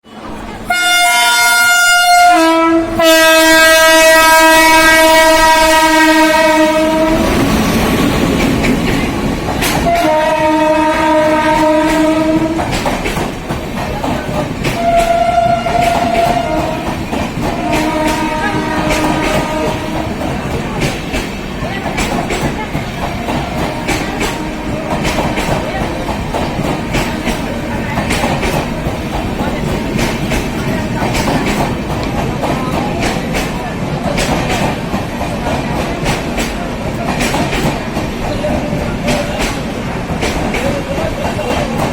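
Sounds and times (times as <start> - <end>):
train rushing past: 0.1 - 41.9
locomotive air horn blast: 0.7 - 7.3, 9.9 - 12.7, 14.8 - 16.9, 17.6 - 20.0.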